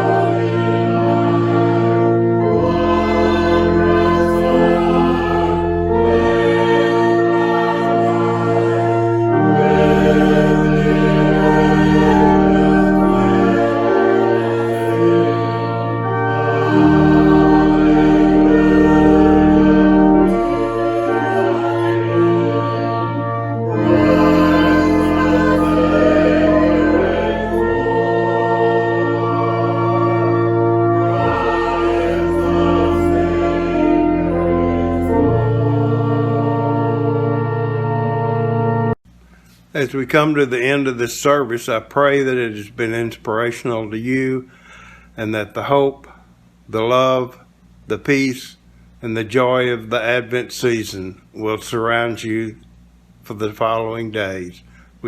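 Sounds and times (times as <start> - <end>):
slow music of held chords: 0.0 - 39.2.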